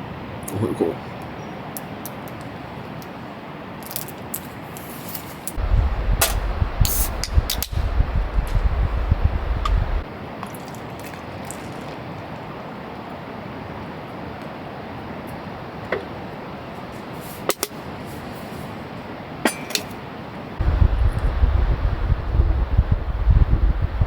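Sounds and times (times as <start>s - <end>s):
background hiss: 4.0s - 10.4s
wind buffeting microphone: 5.6s - 10.1s, 20.6s - 24.0s.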